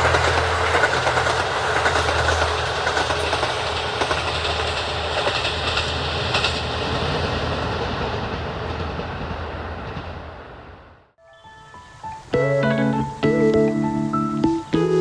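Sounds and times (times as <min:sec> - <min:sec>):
wheels clicking over rail joints: 0:00.0 - 0:10.4
diesel train running past: 0:00.0 - 0:11.2.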